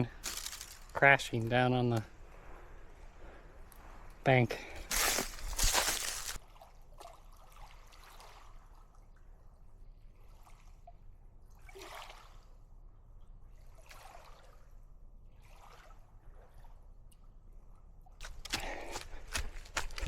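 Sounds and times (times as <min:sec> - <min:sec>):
small waves lapping against bank: 0:00.0 - 0:01.2, 0:04.8 - 0:09.2, 0:10.1 - 0:12.6, 0:13.5 - 0:17.2
soft water splash: 0:10.3 - 0:12.4.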